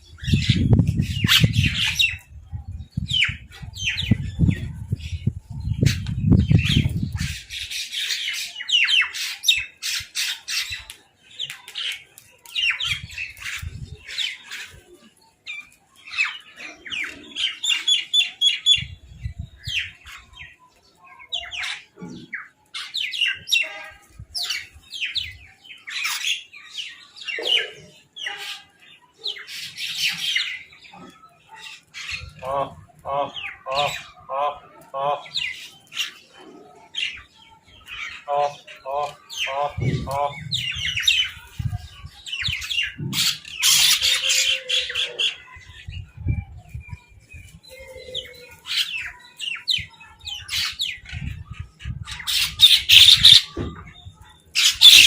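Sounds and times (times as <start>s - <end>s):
crows squawking: 52.2s - 53.5s, 54.6s - 55.0s.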